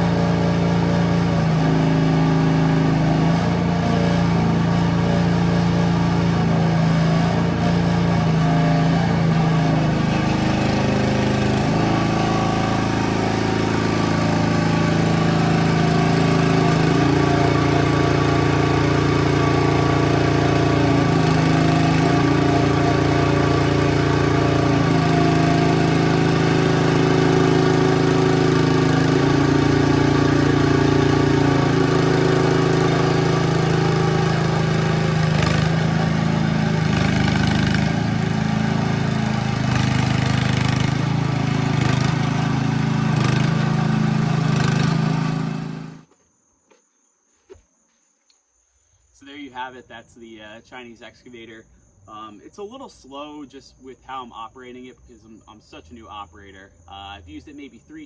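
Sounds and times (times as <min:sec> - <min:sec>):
mini excavator engine running: 0:00.0 - 0:46.2.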